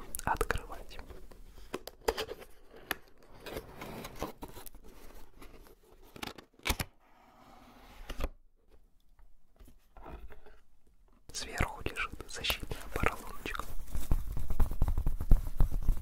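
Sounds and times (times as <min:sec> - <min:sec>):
box lid scraping and rustling: 0:01.9 - 0:06.3.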